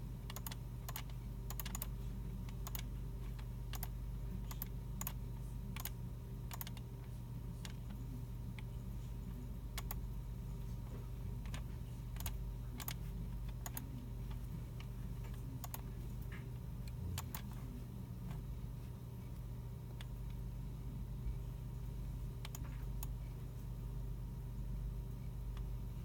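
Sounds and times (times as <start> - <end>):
steady low hum: 0.0 - 26.0
keyboard and mouse clicks: 0.3 - 1.9, 2.5 - 3.9, 6.5 - 6.8, 11.4 - 13.9, 16.9 - 17.6, 22.4 - 23.2.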